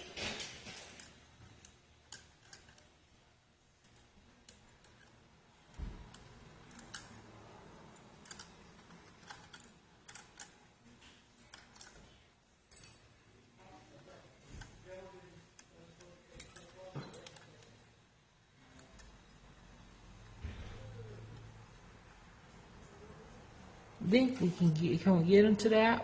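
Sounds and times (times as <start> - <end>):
small metal parts clicking: 0.4 - 3.0, 3.8 - 13.2, 15.6 - 17.9.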